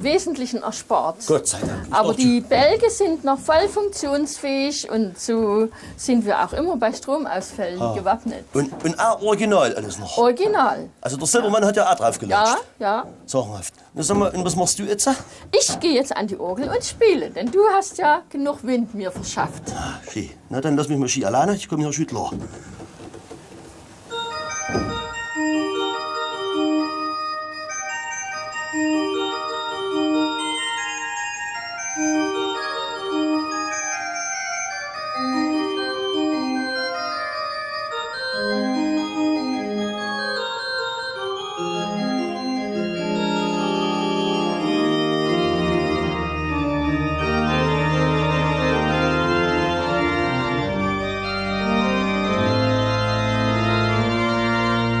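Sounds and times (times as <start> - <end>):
pipe organ playing: 24.0 - 55.0.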